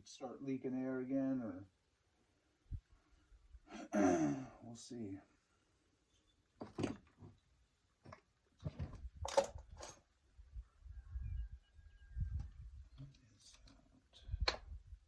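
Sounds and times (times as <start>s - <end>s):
clicks and knocks of handling: 8.0s - 10.0s.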